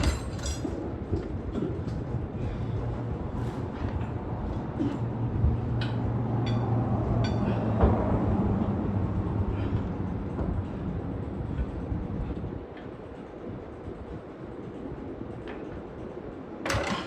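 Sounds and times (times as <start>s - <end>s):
metal tools clinking: 0.0s - 0.8s.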